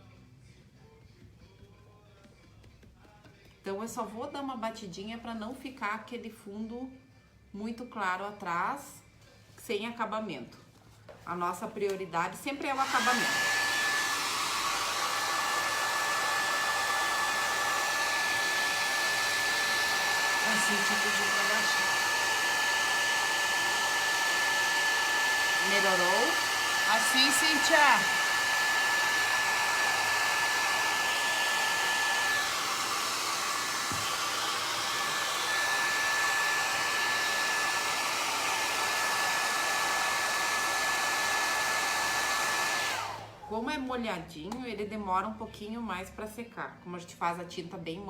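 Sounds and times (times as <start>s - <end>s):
hair dryer blowing: 12.6s - 43.6s.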